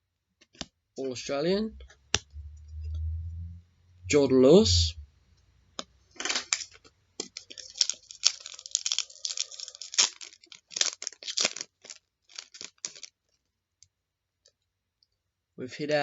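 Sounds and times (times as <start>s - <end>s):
cards rustling: 6.2s - 13.1s
foil pack tearing and crinkling: 6.3s - 13.2s.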